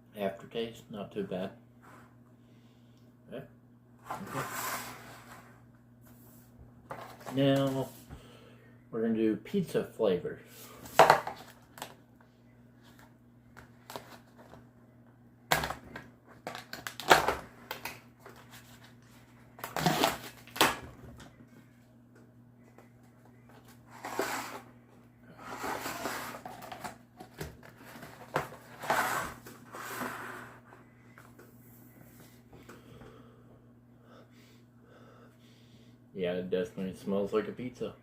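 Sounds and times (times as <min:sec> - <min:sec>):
snack can clicks and crinkles: 0:16.4 - 0:18.4.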